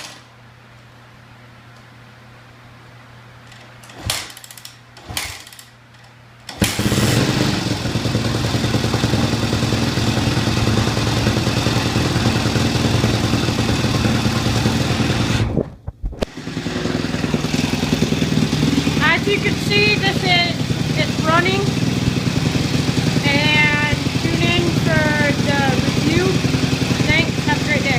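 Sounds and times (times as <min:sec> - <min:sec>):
motorcycle engine starting and running: 0:03.4 - 0:27.9
failed engine start attempts: 0:03.8 - 0:05.7, 0:06.5 - 0:15.6, 0:16.2 - 0:27.5.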